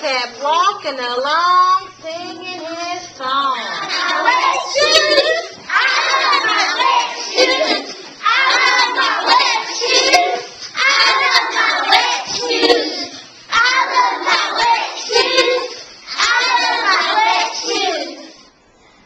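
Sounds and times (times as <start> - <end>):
young children singing: 3.8 - 18.6.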